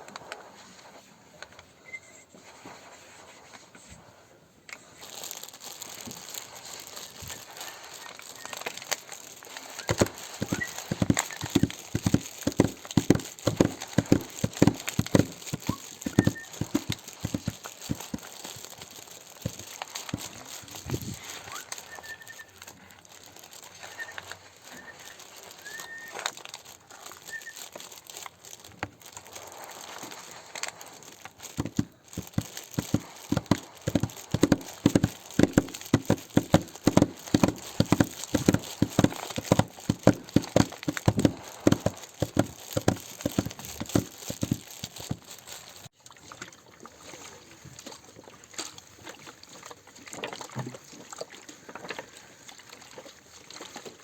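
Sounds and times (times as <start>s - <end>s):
soft rustle: 0.0s - 46.0s.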